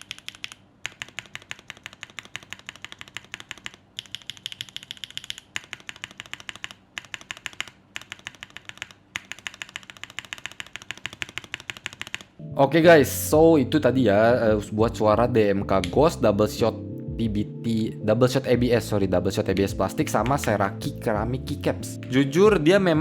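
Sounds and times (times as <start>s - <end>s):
fast typing on mechanical keyboard: 0.0s - 12.4s.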